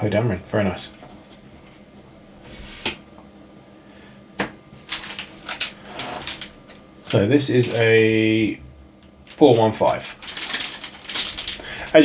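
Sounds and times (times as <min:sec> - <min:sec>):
cards clicking and tapping: 0:04.4 - 0:08.0, 0:09.3 - 0:12.0
foil pack rustling: 0:04.8 - 0:08.1, 0:09.3 - 0:12.0.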